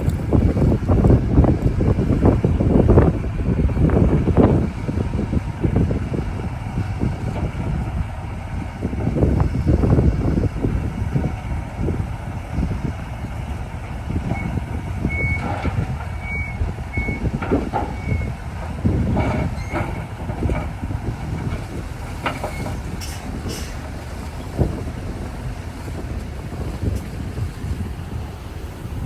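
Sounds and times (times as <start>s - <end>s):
heavy machinery rumbling: 0.0s - 29.0s
reversing alarm beeping: 14.4s - 18.4s.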